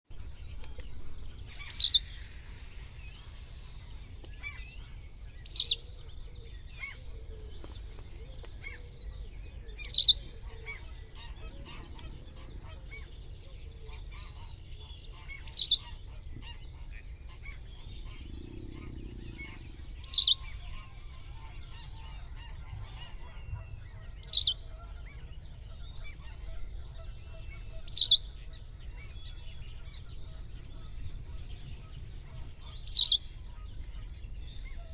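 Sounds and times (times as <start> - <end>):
faint low rumble: 0.1 - 34.9
bird short sharp calls: 0.6 - 8.9, 9.8 - 11.9, 15.2 - 16.6, 18.0 - 23.4, 24.1 - 24.6, 27.9 - 28.2, 32.3 - 33.7.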